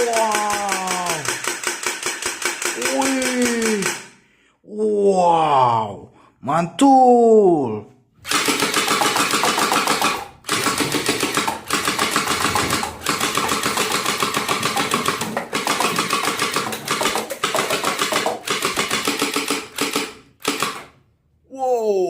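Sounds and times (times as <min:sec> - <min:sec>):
toy gun firing rattling bursts: 0:00.0 - 0:04.1, 0:08.2 - 0:21.0.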